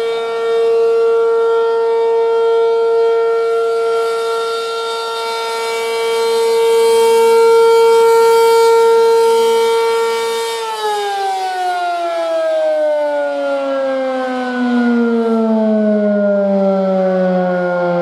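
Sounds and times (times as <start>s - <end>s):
outdoor warning siren steady tone: 0.0s - 18.0s.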